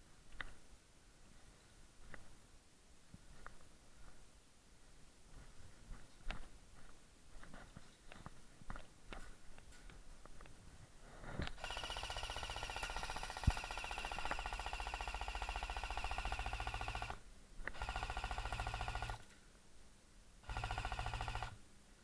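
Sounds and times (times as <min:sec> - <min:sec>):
airsoft gun firing full-auto: 0:11.6 - 0:19.2, 0:20.4 - 0:21.6.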